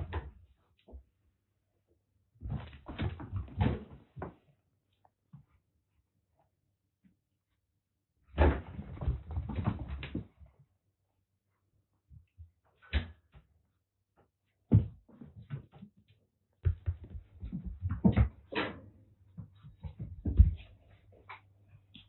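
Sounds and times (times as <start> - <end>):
kittens thumping and scuffling: 2.4 - 4.5, 8.3 - 10.5, 14.7 - 22.0.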